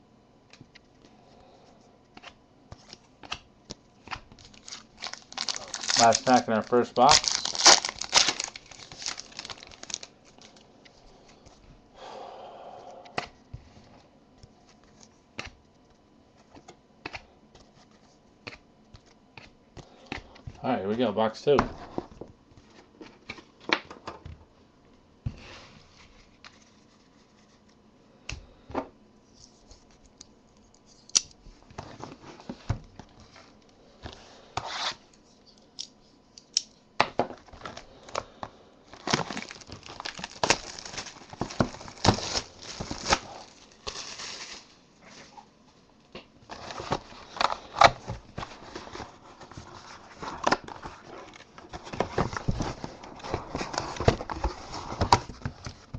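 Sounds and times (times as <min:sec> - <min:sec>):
plastic wrapping crinkling: 0:04.2 - 0:11.5, 0:37.3 - 0:45.4.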